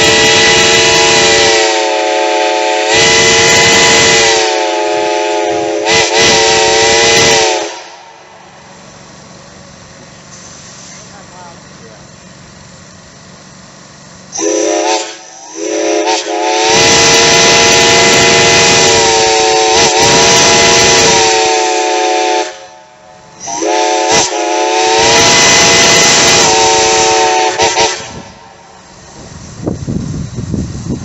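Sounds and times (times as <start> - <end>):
chime steam whistle blasts: 0.0 - 8.2, 14.3 - 28.4
loud steam hiss: 0.0 - 31.0.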